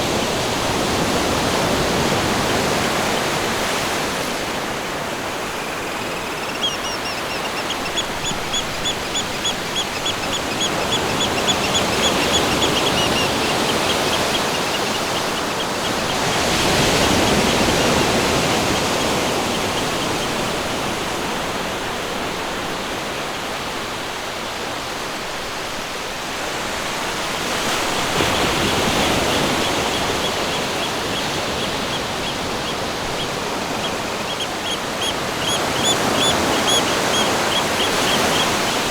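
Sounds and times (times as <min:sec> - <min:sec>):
rushing water: 0:00.0 - 0:38.9
bird chirping: 0:05.0 - 0:20.5, 0:28.2 - 0:38.9.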